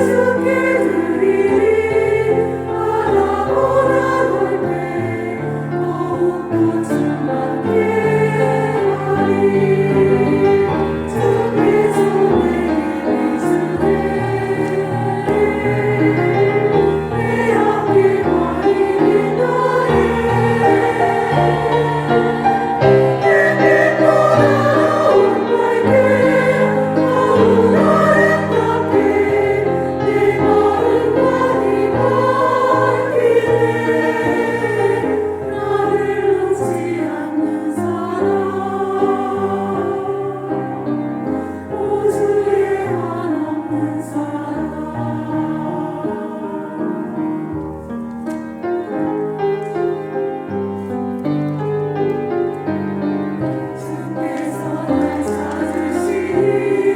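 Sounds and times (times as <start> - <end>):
choir singing: 0.0 - 56.9.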